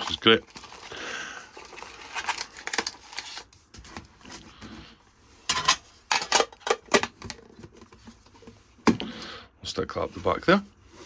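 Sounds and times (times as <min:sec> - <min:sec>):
card packaging crinkling: 0:00.0 - 0:03.7.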